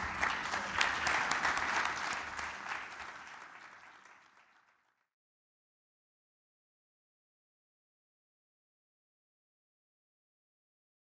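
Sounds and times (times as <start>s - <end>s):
audience applauding: 0.0s - 5.0s.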